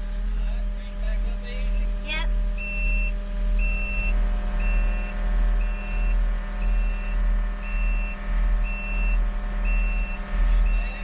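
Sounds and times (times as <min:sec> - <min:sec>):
engine running under load: 0:00.0 - 0:11.0
backup alarm beeping: 0:02.6 - 0:11.0.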